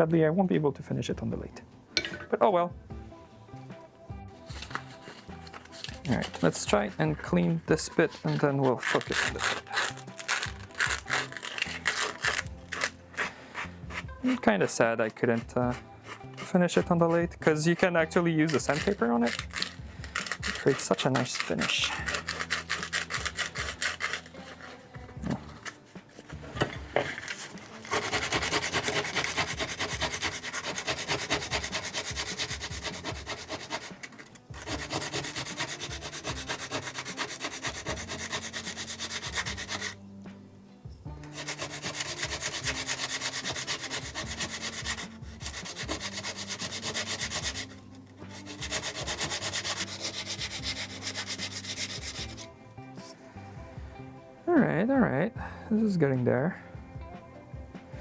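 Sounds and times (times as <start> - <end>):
sandpaper rubbing on wood: 4.5 - 40.0, 41.3 - 52.5.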